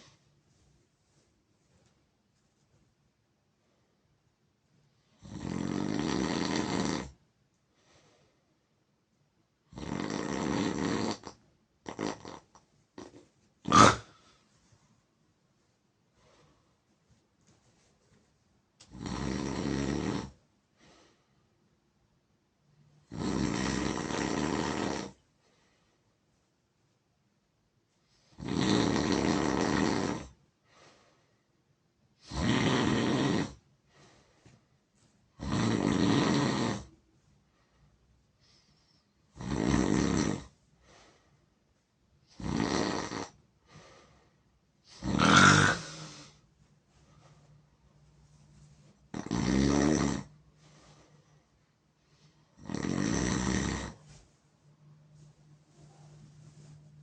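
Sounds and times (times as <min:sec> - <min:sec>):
person snoring: 0:05.2 - 0:07.2, 0:09.7 - 0:14.4, 0:18.9 - 0:20.4, 0:23.0 - 0:25.2, 0:28.3 - 0:30.4, 0:32.2 - 0:33.6, 0:35.4 - 0:37.0, 0:39.3 - 0:40.5, 0:42.3 - 0:44.1, 0:44.9 - 0:46.4, 0:49.1 - 0:50.4, 0:52.5 - 0:54.1.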